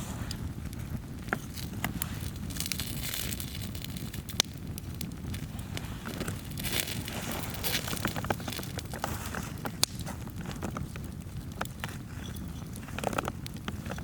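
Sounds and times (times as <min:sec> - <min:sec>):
melting snow hissing: 0:00.0 - 0:10.6
campfire flames rumbling: 0:00.0 - 0:14.0
firewood popping and crackling: 0:00.0 - 0:14.0.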